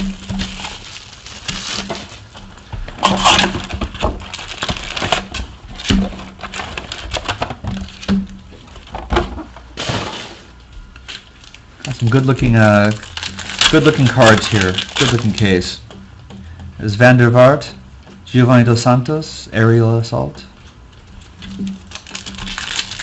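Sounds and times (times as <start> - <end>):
packaging rustling and ripping: 0.0 - 2.4, 3.0 - 15.8, 21.1 - 23.0.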